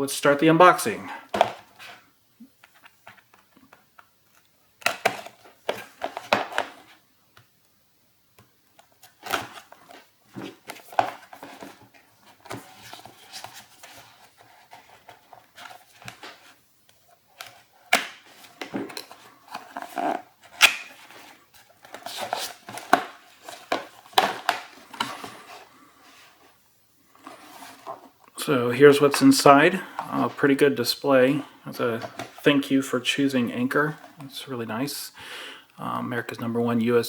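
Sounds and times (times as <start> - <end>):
cardboard box rustling and scraping: 27.2 - 28.1.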